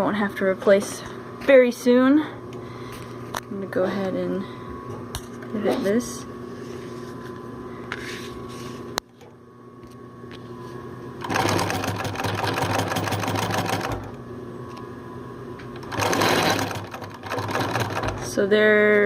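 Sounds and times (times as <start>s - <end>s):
sewing machine stitching: 11.2s - 14.1s, 15.8s - 18.4s
sewing machine motor humming: 11.2s - 14.2s, 15.8s - 18.4s.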